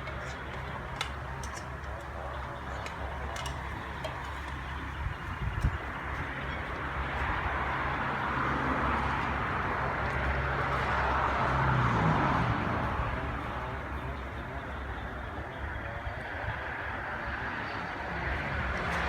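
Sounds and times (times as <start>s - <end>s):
vehicle passing by: 7.0s - 19.0s.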